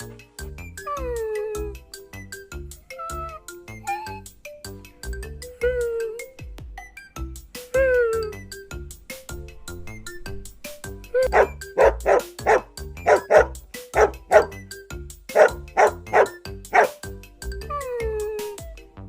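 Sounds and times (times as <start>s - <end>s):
background music: 0.0s - 19.0s
puppy yapping: 11.2s - 14.6s, 15.4s - 17.0s.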